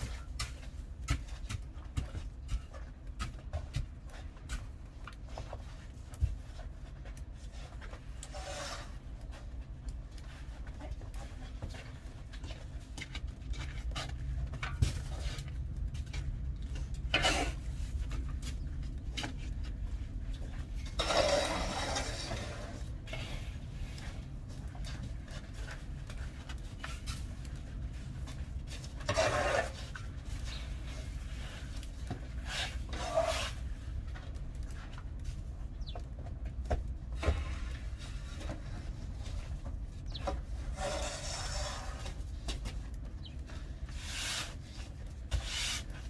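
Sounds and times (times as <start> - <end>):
scraping and rubbing: 20.4 - 23.6, 28.8 - 34.0, 37.2 - 46.0.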